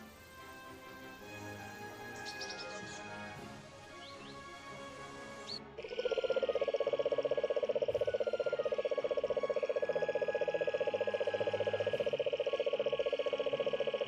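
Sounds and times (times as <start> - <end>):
frog pulsed trill: 5.8 - 14.0.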